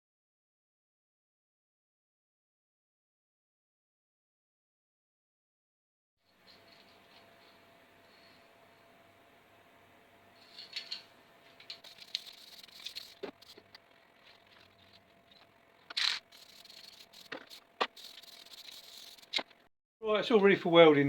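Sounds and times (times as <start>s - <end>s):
faint steady hum: 6.3s - 19.7s.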